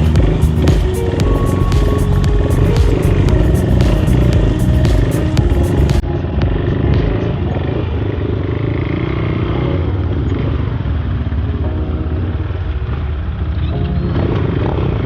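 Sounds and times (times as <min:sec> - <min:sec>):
motorcycle engine running: 0:00.0 - 0:11.6.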